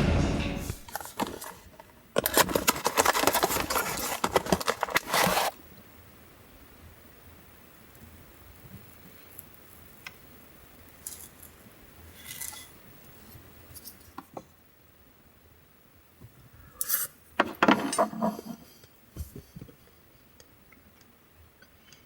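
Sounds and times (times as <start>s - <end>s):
utensils clinking and scraping: 0.8s - 5.5s.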